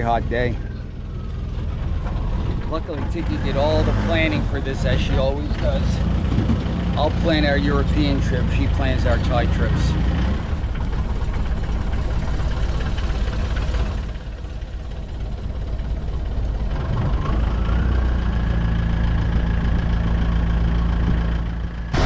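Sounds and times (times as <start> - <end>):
boat motor running: 0.0 - 22.0
rising motor whine: 16.4 - 22.0.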